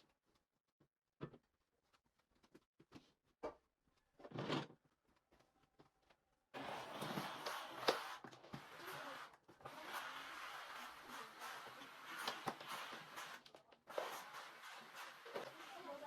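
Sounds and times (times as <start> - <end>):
steam mop swishing and hissing: 6.6 - 16.0.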